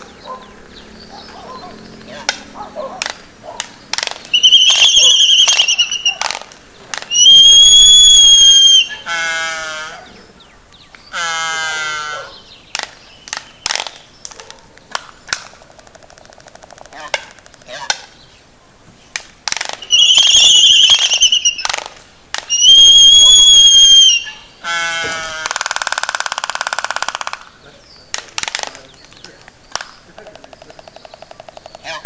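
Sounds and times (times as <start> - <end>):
albatross bill clacks: 1.3 - 7.4, 12.7 - 18.2, 19.1 - 22.7, 25.0 - 32.0
albatross squealing calls: 4.1 - 10.1, 11.1 - 12.4, 19.7 - 21.9, 22.5 - 27.4.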